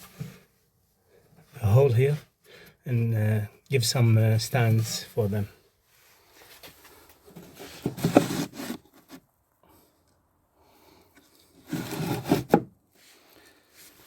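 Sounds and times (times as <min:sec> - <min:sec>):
wooden parts rubbing and scraping: 0:07.4 - 0:09.2, 0:11.5 - 0:12.6.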